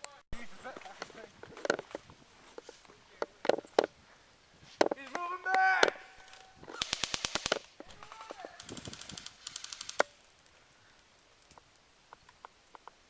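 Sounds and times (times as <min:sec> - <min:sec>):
sharp crack: 0:04.9 - 0:10.5
airsoft gun bursts: 0:06.7 - 0:10.2
scattered ticks: 0:08.3 - 0:13.0.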